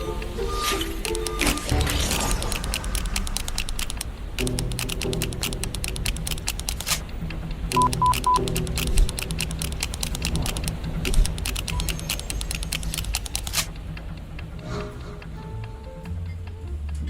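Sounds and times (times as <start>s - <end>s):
low background music: 0.0s - 17.0s
short electronic beeps: 0.4s - 2.4s, 7.7s - 8.4s
keyboard typing clicks: 0.6s - 7.0s, 7.7s - 13.7s.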